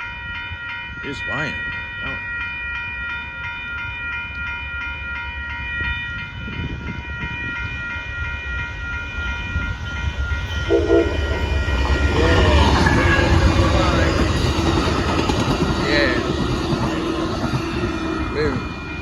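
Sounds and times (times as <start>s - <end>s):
rumble of passing train: 0.0s - 19.0s
train horn: 10.5s - 14.6s.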